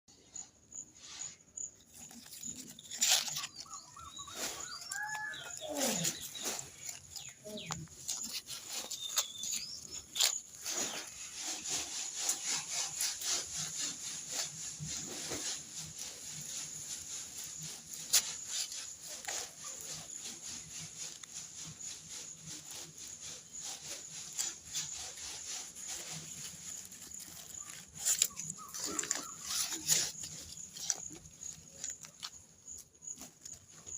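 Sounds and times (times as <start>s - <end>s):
dry corn plants rustling: 0.9s - 33.9s
short sliding calls: 2.4s - 13.7s.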